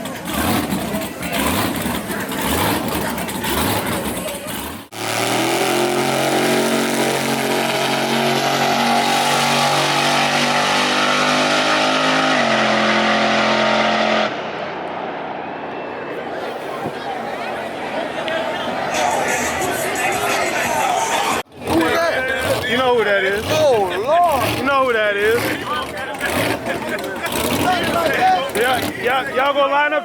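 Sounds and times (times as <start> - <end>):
race car engine revving: 0.0 - 30.0.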